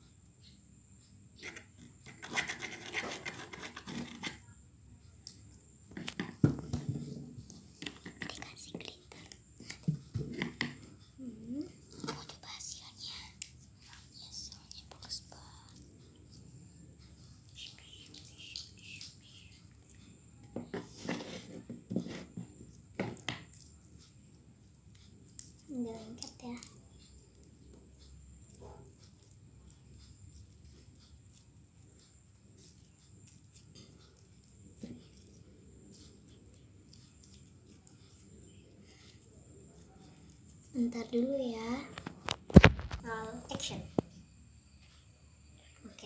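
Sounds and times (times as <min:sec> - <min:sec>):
faint hissy sounds: 0:10.9 - 0:22.2
slime being stirred crackling: 0:20.8 - 0:42.0.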